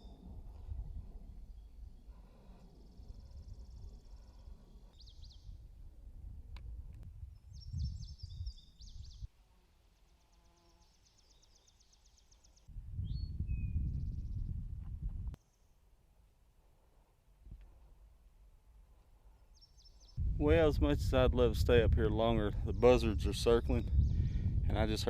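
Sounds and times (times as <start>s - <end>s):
wind buffeting microphone: 0.0s - 9.3s, 12.7s - 15.4s, 20.2s - 25.0s
small birds chirping: 1.4s - 5.6s, 7.3s - 9.3s, 10.0s - 14.6s, 19.3s - 20.3s.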